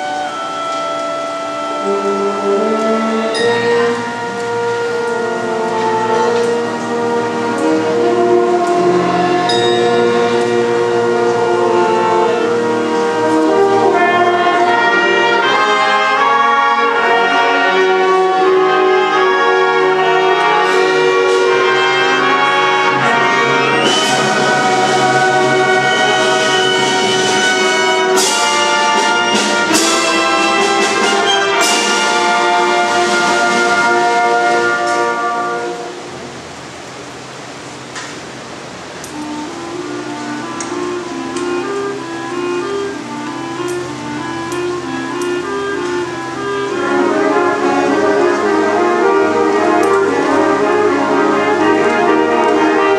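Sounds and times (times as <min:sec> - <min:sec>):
wind band playing chords: 0:00.0 - 0:52.9
sharp percussion strikes: 0:08.7 - 0:11.2, 0:20.6 - 0:35.2.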